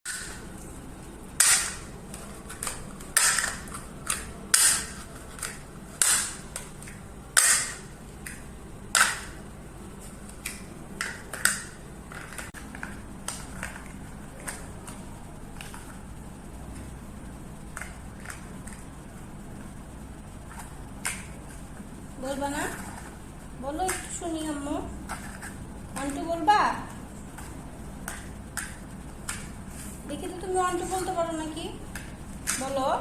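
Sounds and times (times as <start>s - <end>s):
toy blocks clacking together: 2.5s - 7.8s.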